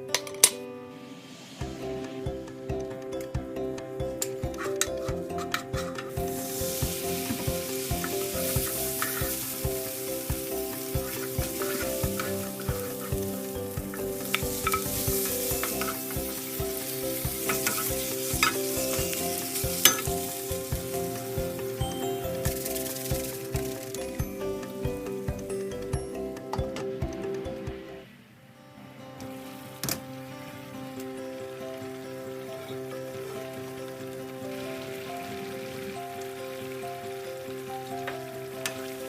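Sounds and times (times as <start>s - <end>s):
curry sizzling in a pot: 4.2s - 25.2s, 29.3s - 39.0s
utensil scraping a pot: 4.5s - 9.9s, 10.6s - 21.1s.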